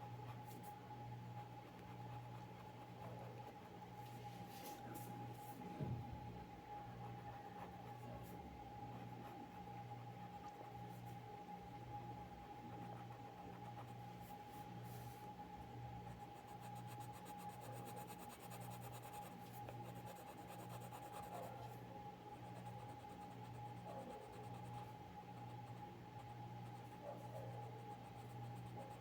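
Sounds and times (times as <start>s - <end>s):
thin electrical hum: 0.0s - 29.0s
pencil scratching on paper: 16.1s - 21.8s.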